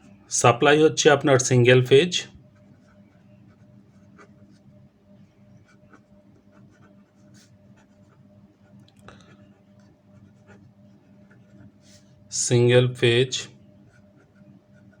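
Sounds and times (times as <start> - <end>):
pen scratching on paper: 2.3 - 12.2, 13.8 - 15.0.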